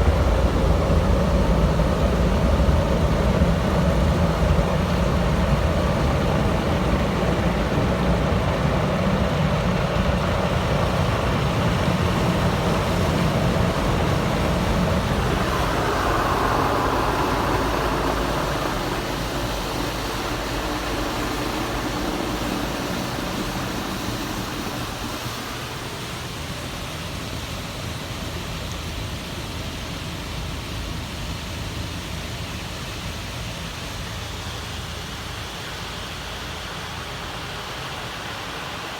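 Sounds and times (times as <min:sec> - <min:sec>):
car wash machinery rushing: 0:00.0 - 0:38.9
low rumble: 0:12.8 - 0:23.8.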